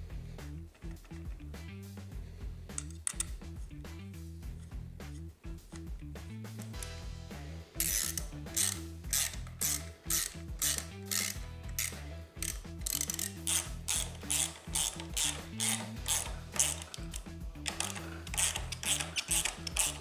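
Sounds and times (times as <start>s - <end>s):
background music with bass line: 0.0s - 20.0s
ratchet wrench clicking: 2.7s - 3.6s, 6.6s - 7.0s, 7.8s - 20.0s.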